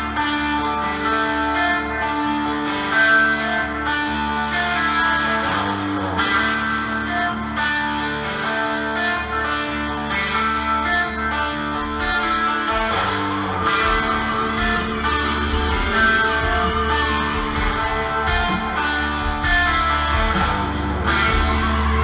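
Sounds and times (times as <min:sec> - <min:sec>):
instrumental guitar music: 0:00.0 - 0:22.0.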